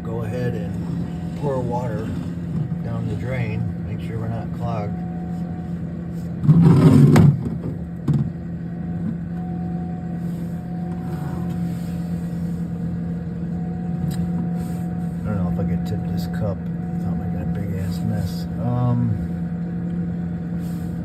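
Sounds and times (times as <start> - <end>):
refrigerator humming: 0.0 - 21.0.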